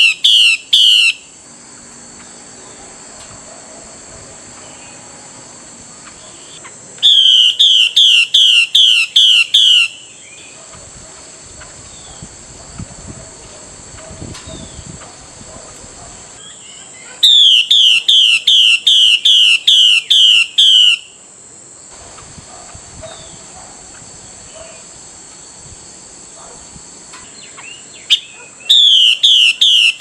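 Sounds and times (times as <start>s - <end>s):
high-pitched background hum: 0.0s - 30.0s
bird calling descending notes: 6.1s - 10.5s, 16.4s - 21.1s, 28.0s - 30.0s.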